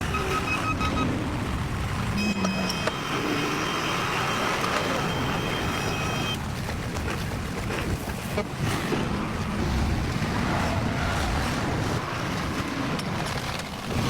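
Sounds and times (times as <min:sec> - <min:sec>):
reversing beeps: 0:00.0 - 0:01.2, 0:02.2 - 0:06.4
diesel machinery rumbling: 0:00.0 - 0:14.0
high-pitched machine squeal: 0:02.2 - 0:06.4.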